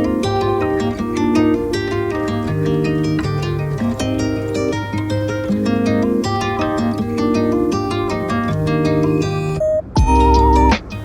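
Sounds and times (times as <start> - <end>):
plucked string melody: 0.0 - 11.0
steady bass line: 8.6 - 10.9.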